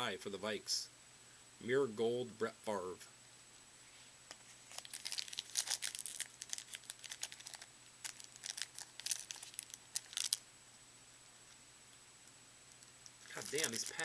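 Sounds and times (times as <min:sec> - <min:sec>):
foil wrapper crinkling and tearing: 0:04.6 - 0:10.4, 0:13.2 - 0:14.0.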